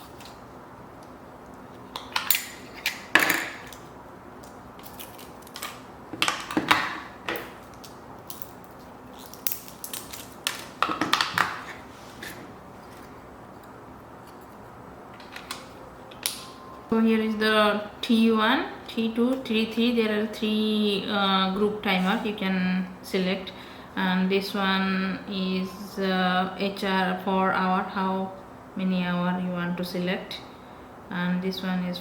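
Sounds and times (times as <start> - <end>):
packaging crinkling: 7.6 - 10.8.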